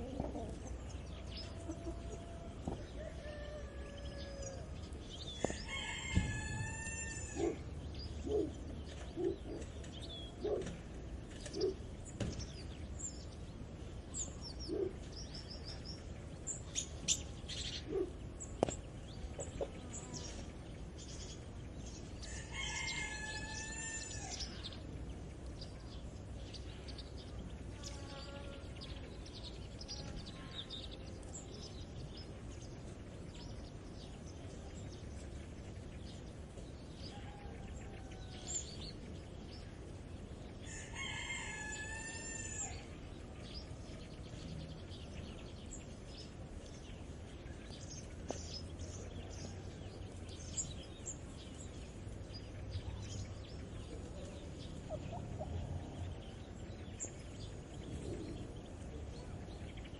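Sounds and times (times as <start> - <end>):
small birds chirping: 0.0 - 59.9
rooster crowing: 1.8 - 7.6, 22.2 - 24.5, 37.1 - 38.7, 40.6 - 42.9
low rumble: 47.7 - 59.9.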